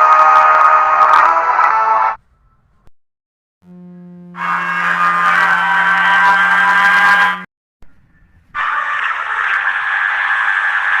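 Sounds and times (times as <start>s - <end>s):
electronic warning buzz: 3.6s - 7.4s.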